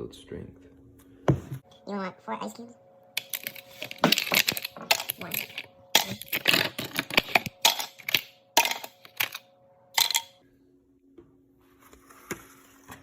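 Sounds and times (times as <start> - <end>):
ice cubes clinking into container: 3.2 - 9.4, 10.0 - 10.4.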